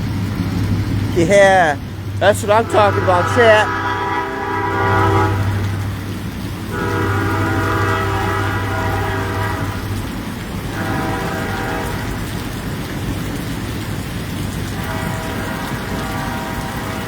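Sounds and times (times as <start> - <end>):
steady rain: 0.0 - 17.0
train air horn chord: 1.6 - 12.3, 14.8 - 17.0.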